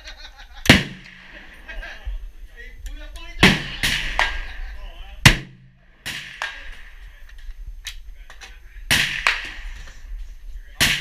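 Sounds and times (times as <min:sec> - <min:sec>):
gunshots ringing: 0:00.6 - 0:01.7, 0:03.4 - 0:04.6, 0:05.2 - 0:07.1, 0:08.9 - 0:09.9, 0:10.8 - 0:11.0.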